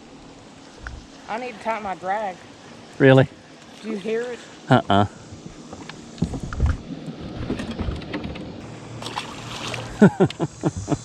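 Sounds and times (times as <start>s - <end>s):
low bumps and knocks: 6.2s - 8.6s.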